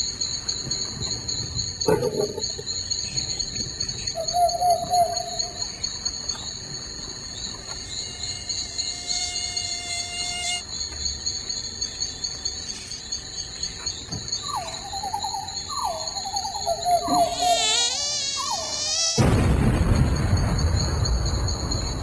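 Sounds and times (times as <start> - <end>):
crickets chirping: 0.0 - 22.0
mosquito whining: 8.0 - 10.6, 17.0 - 19.2
comic explosion sound effect: 19.2 - 22.0.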